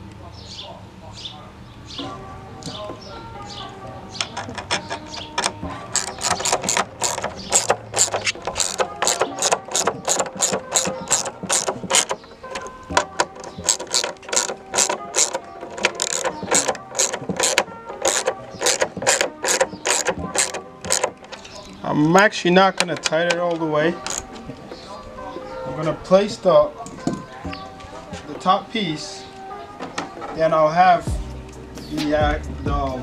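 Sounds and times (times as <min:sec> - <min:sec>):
hand ratchet clicking: 0:04.2 - 0:21.5, 0:22.8 - 0:24.5.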